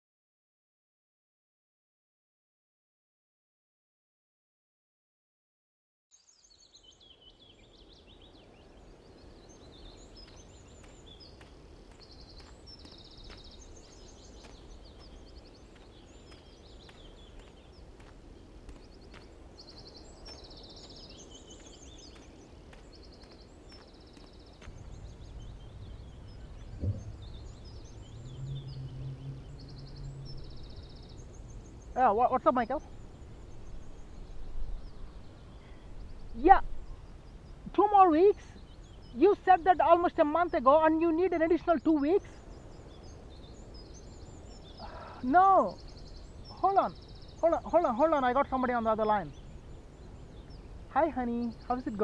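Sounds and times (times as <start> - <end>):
birds chirping and trilling: 6.2 - 52.0
low steady hum: 8.8 - 40.6
steady low rumble: 9.1 - 37.7
single knock: 26.8 - 27.2.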